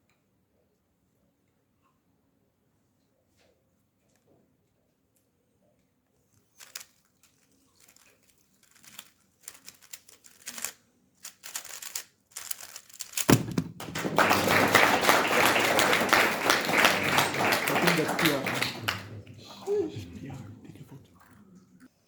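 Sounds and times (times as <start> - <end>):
plastic cube clicking: 7.8 - 13.8
sharp knock: 13.3 - 14.2
applause: 13.3 - 21.2.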